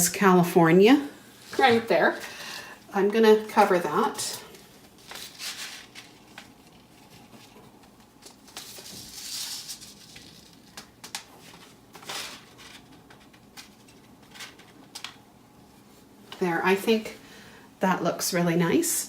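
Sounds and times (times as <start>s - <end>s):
paper seed packets rustling: 1.4s - 2.6s, 3.3s - 15.0s.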